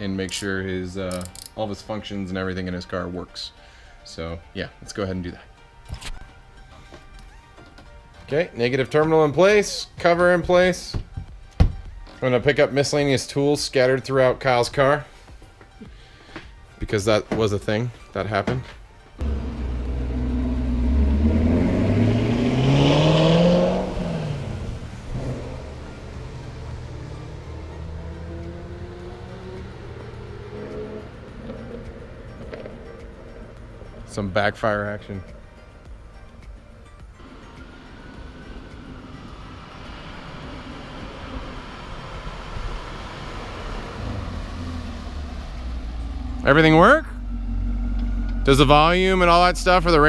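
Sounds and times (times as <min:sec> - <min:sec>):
road noise hiss: 0:19.2 - 0:34.2, 0:35.7 - 0:50.0
car engine starting and idling: 0:19.2 - 0:35.0, 0:37.2 - 0:50.0.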